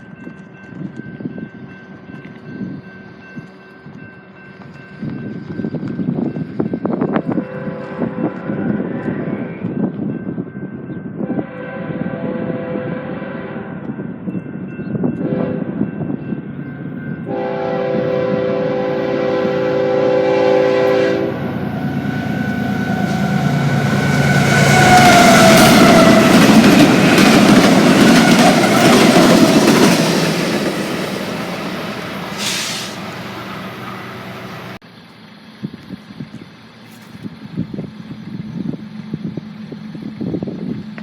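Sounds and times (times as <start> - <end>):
locomotive air horn: 7.3 - 9.6, 11.2 - 13.8, 15.3 - 15.8, 17.3 - 26.6, 32.3 - 33.2
locomotive engines passing: 16.4 - 41.0.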